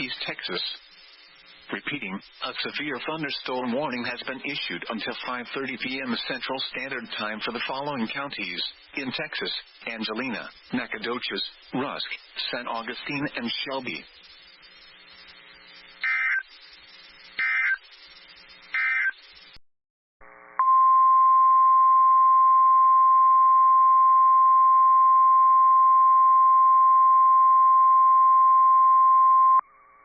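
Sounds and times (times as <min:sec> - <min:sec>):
receiver hiss: 0:00.0 - 0:19.6
warbling data bursts: 0:00.0 - 0:19.6.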